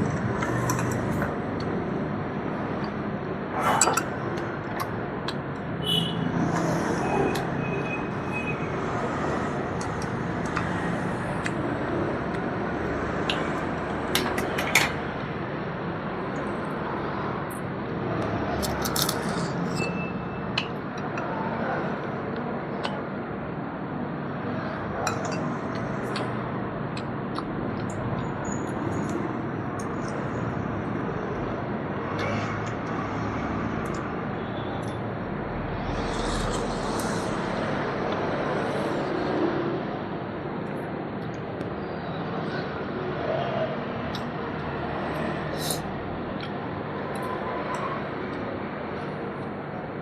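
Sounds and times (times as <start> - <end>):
dishes and cutlery clinking: 3.7 - 4.2, 25.0 - 25.6.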